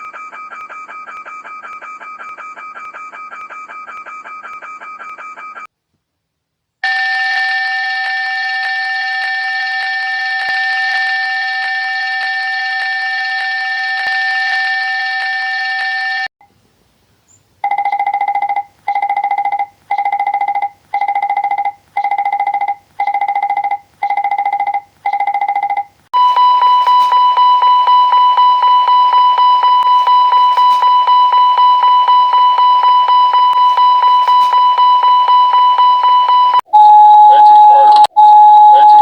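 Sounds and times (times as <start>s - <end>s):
pulsed electronic alarm tone: 6.8s - 16.3s, 17.7s - 39.0s
ringing fire warning alarm: 6.8s - 16.3s, 17.6s - 39.0s.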